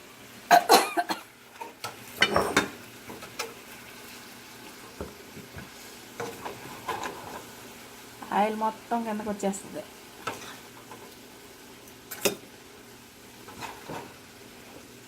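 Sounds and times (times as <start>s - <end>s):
chicken sizzling in hot oil: 1.2s - 15.0s
spatula scraping pan: 2.2s - 2.8s, 10.2s - 11.1s, 13.4s - 14.2s.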